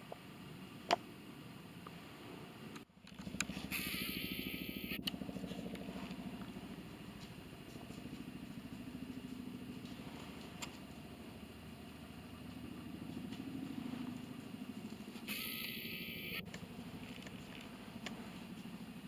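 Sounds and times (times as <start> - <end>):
vehicle engine running: 2.0 - 19.0
short burst of hiss: 3.7 - 5.0.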